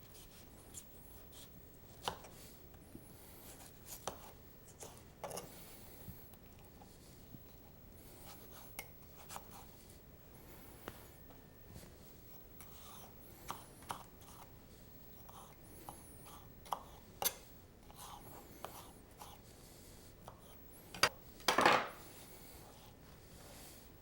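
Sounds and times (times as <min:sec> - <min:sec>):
knife tapping and scraping on board: 0:16.6 - 0:17.4.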